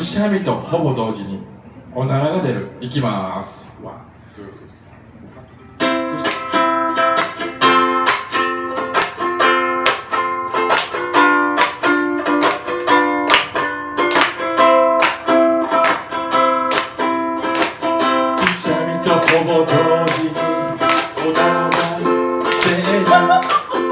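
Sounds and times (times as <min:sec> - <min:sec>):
ukulele strumming: 0:05.6 - 0:23.9.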